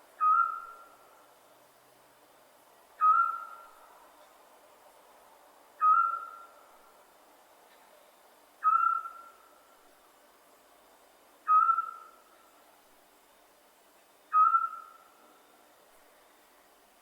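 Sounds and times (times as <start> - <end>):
owl whistling call: 0.2 - 1.0, 3.0 - 3.8, 5.8 - 6.5, 8.6 - 9.4, 11.4 - 12.2, 14.3 - 15.1.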